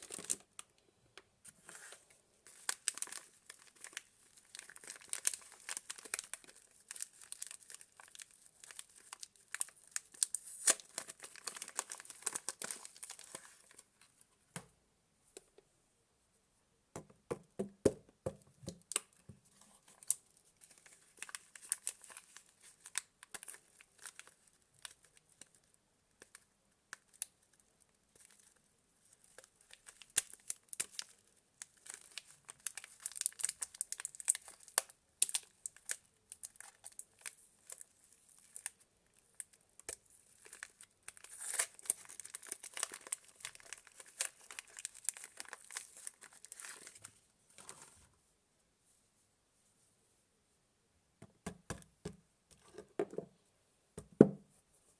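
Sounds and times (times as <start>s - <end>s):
wrappers crinkling and tearing: 0.0s - 0.7s, 1.6s - 13.9s, 19.8s - 48.0s.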